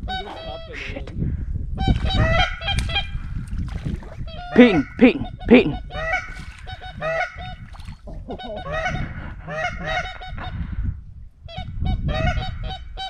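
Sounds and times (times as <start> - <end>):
geese honking: 0.0 - 1.1, 1.8 - 3.4, 4.2 - 7.7, 8.3 - 10.7
wind rumble on microphone: 0.0 - 13.0.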